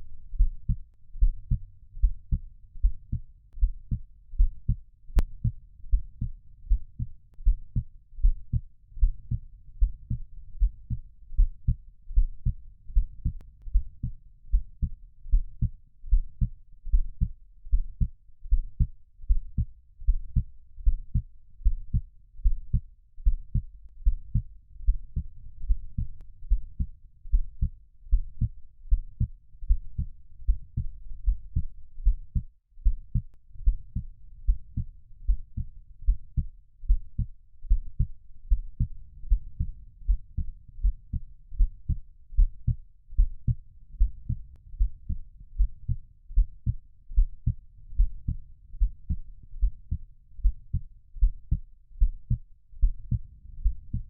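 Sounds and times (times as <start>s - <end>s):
heartbeat lub-dub thumps: 0.4s - 54.0s.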